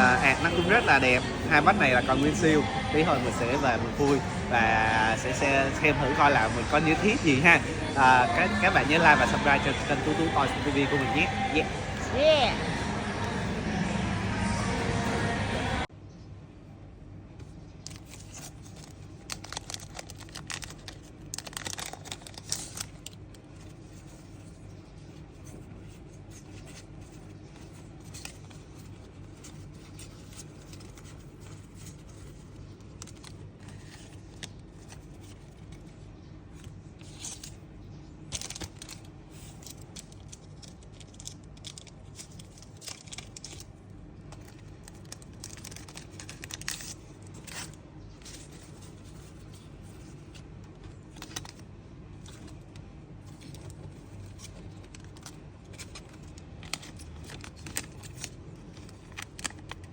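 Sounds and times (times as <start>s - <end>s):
steady low hum: 0.0s - 59.9s
plastic packaging crinkling: 17.8s - 59.9s.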